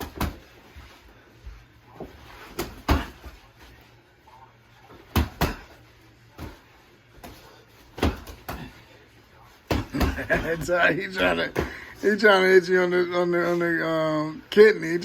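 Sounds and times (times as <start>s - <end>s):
boxing glove punches landing: 2.5s - 3.4s, 5.1s - 5.8s, 7.2s - 8.8s, 9.7s - 10.6s.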